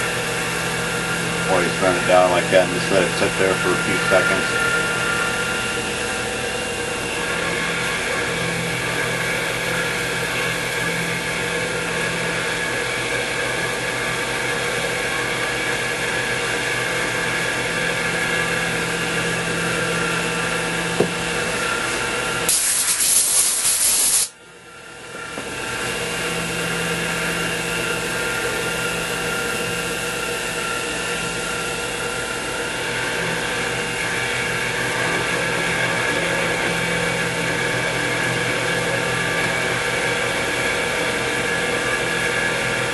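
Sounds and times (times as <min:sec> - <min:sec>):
mill motor and gear whine: 0:00.0 - 0:42.9
loud hiss: 0:22.5 - 0:24.3.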